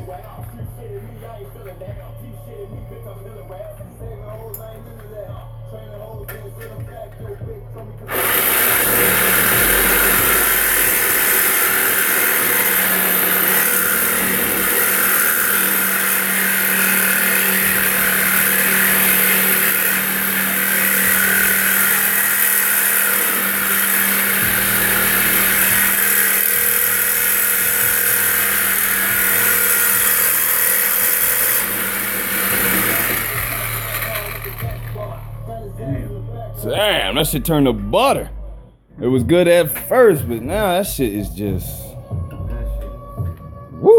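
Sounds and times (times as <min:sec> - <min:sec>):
power saw cutting steel pipe: 0:08.1 - 0:35.6.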